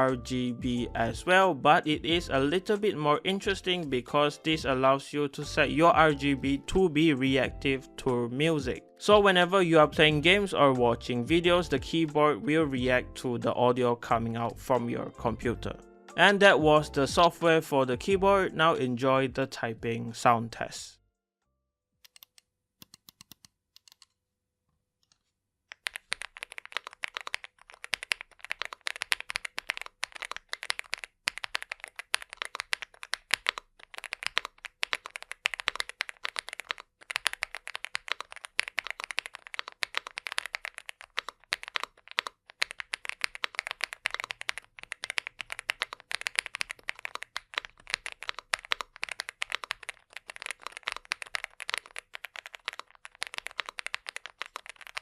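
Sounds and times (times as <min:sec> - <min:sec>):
keyboard typing: 0:22.1 - 0:24.2, 0:25.0 - 0:55.0.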